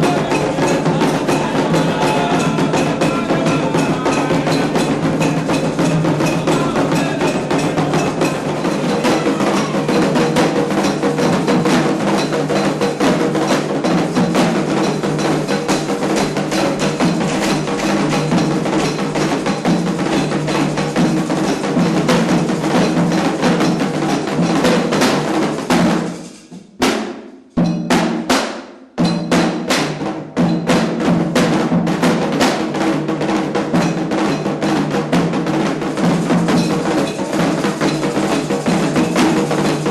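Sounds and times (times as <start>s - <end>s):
struck bell: 0.0s - 24.6s, 27.5s - 27.9s, 36.0s - 39.8s
hand drums drumming: 0.0s - 39.9s.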